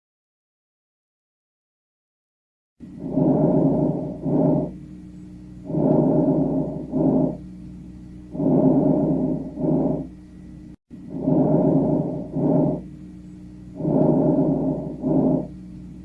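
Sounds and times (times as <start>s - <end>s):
person breathing lung sounds: 2.8s - 4.8s, 5.6s - 7.4s, 8.3s - 10.1s, 11.0s - 12.9s, 13.7s - 15.6s
faint low hum: 2.8s - 16.0s.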